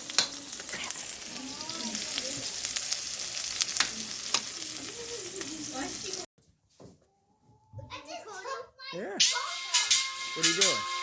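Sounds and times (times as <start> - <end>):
zucchini sizzling in a pan: 0.0 - 6.3.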